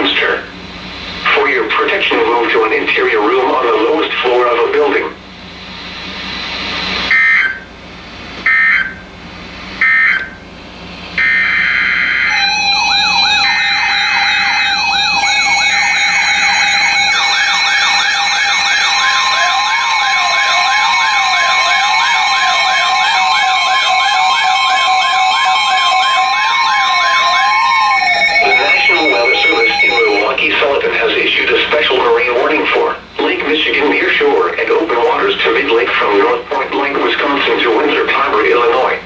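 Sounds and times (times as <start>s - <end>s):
electronic siren tones sweeping: 7.0s - 7.7s, 8.4s - 9.0s, 9.8s - 10.4s, 11.2s - 32.9s
steady tones: 11.1s - 39.0s
screechy digital data bursts: 11.2s - 32.5s.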